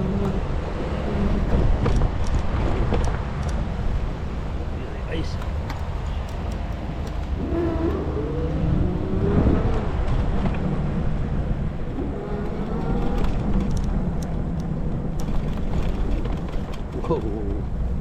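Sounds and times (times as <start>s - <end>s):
faint motor whine: 0.0s - 18.0s
wind and tyre rumble: 0.0s - 18.0s
light clicks: 1.8s - 3.6s.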